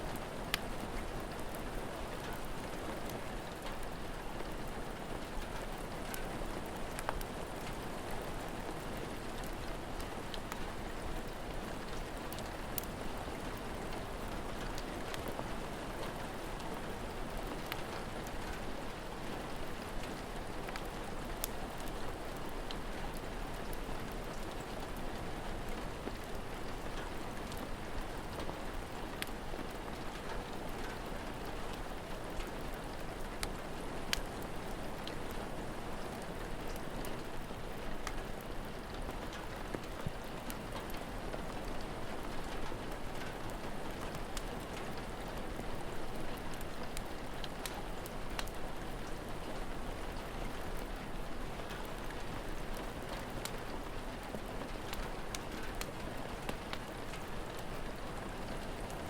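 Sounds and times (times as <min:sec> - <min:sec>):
rain falling: 0:00.0 - 0:59.0
wood fire crackling: 0:00.5 - 0:01.6, 0:10.2 - 0:16.2, 0:25.6 - 0:35.4, 0:37.7 - 0:59.0.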